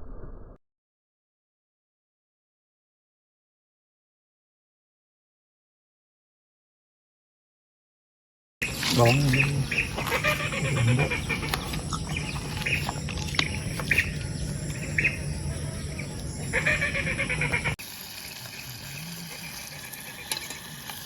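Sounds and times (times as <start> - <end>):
high bird calls: 8.6 - 17.8
steady low hum: 8.6 - 17.8.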